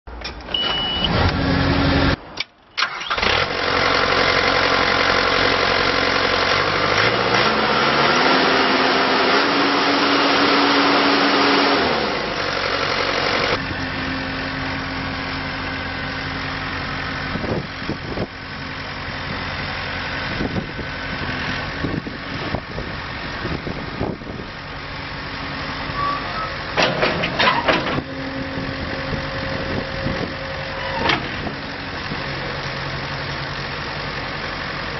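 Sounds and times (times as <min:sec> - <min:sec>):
diesel engine starting and running: 0:00.1 - 0:34.9
short beep: 0:00.5 - 0:01.2
knocks and clatter: 0:26.8 - 0:28.1.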